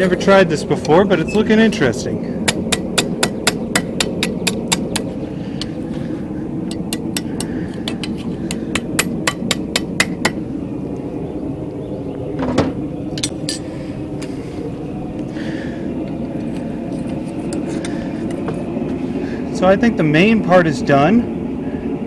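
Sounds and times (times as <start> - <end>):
steady low hum: 0.0 - 22.0
hammer striking steel on anvil: 2.4 - 5.8, 6.7 - 10.4.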